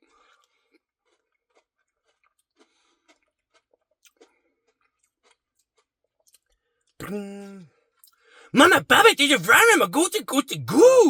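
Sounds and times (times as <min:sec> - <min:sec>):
chewing and mouth sounds: 0:00.1 - 0:11.0.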